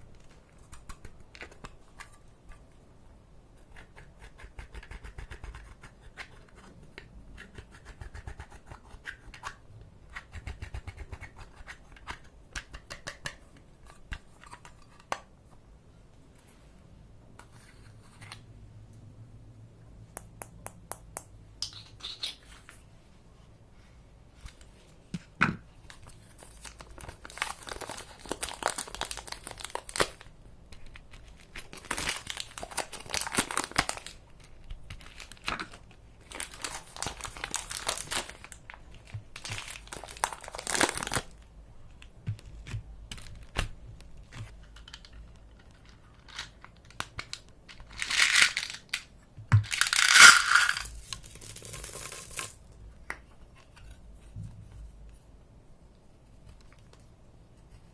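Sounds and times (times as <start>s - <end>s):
crinkling and rustling: 24.3s - 55.3s.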